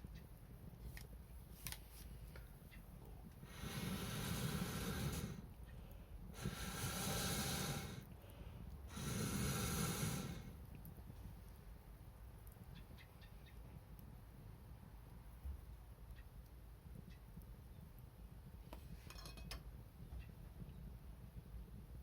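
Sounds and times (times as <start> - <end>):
wood fire crackling: 0.0 - 22.0
person blowing on fire: 3.4 - 5.6, 6.3 - 10.7.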